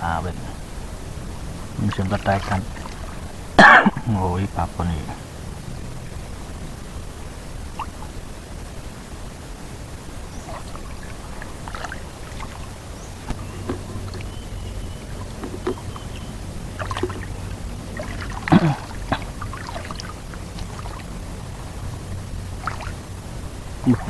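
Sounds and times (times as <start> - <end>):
water sloshing around wader: 1.4 - 4.1, 10.2 - 24.0
small splashes: 1.6 - 3.6, 10.3 - 24.0.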